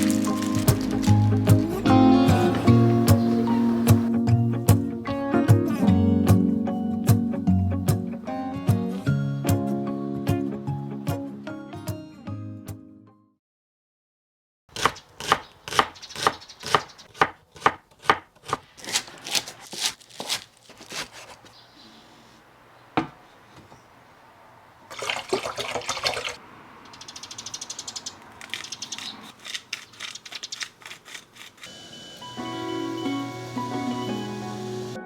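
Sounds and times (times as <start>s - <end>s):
knife chopping on cutting board: 14.8s - 21.3s
running water: 24.8s - 26.4s.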